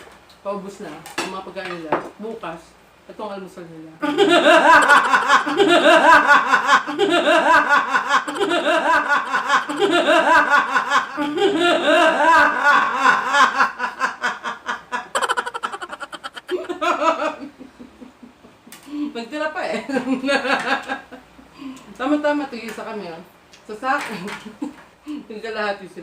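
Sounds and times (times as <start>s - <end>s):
person laughing hard: 4.0s - 18.5s.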